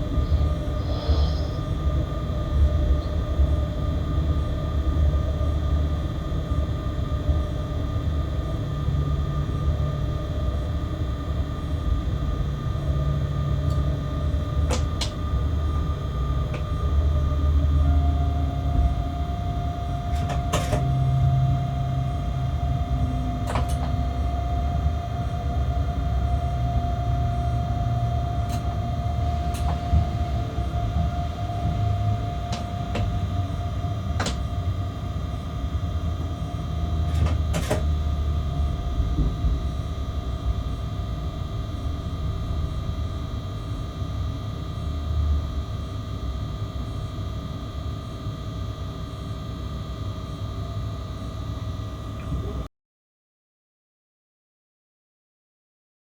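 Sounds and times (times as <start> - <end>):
locomotive cab rumble: 0.0 - 44.0
electrical hum: 0.0 - 52.7
steady whine: 0.0 - 52.7.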